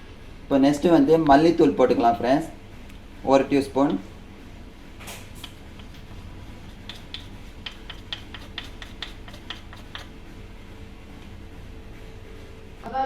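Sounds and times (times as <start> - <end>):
spoon tapping against bowl: 6.8 - 10.1.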